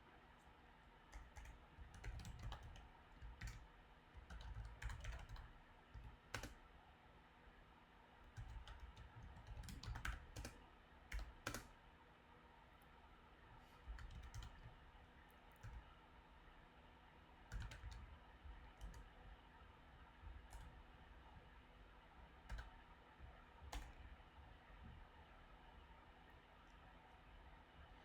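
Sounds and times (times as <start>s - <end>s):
faint computer keyboard typing: 0.4s - 6.7s, 8.2s - 11.8s, 13.8s - 16.0s, 17.4s - 21.6s, 22.2s - 25.1s.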